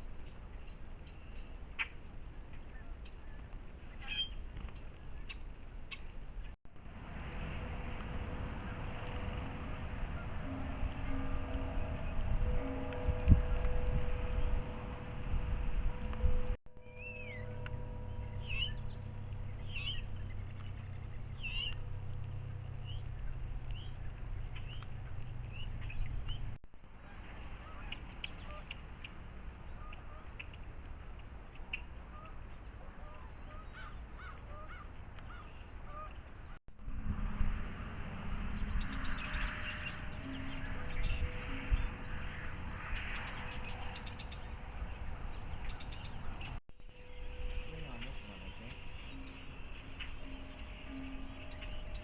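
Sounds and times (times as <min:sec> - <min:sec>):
birds calling and chirping: 0:00.0 - 0:06.6, 0:07.8 - 0:36.6, 0:38.2 - 0:52.0
songbirds chipping: 0:00.0 - 0:06.6, 0:08.6 - 0:36.6, 0:38.2 - 0:52.0
low background rumble: 0:05.0 - 0:52.0
faint steady hum: 0:05.6 - 0:42.8.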